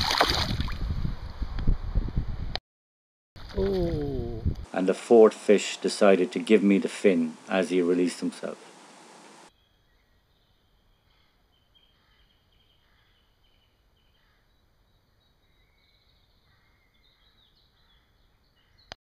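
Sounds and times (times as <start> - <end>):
faint birds chirping: 5.9 - 19.0.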